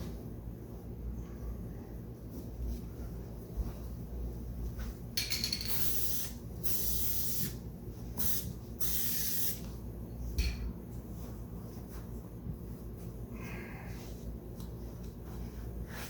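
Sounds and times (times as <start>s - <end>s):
aerosol can spraying: 5.6s - 7.6s, 8.2s - 9.7s.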